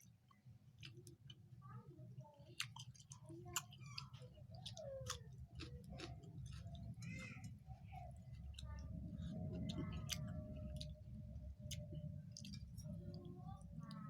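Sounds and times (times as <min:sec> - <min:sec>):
wet chewing and mouth clicks: 0:02.5 - 0:07.0, 0:08.2 - 0:11.0, 0:11.6 - 0:13.3
steady low hum: 0:04.3 - 0:14.0.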